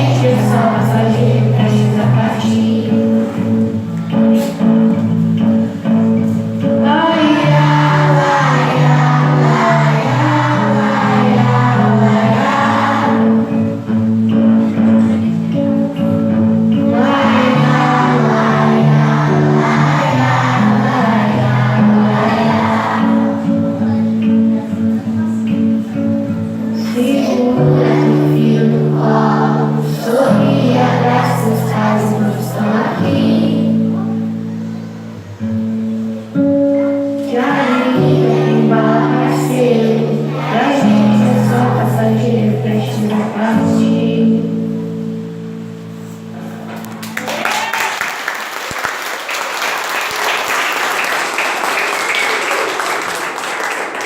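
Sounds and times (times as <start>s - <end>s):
children singing: 0.0s - 3.3s, 6.8s - 13.7s, 16.8s - 23.6s, 26.8s - 34.2s, 37.2s - 44.4s
held chords: 0.0s - 47.4s
song closing chord: 6.8s - 24.0s
audience applause: 46.9s - 54.0s.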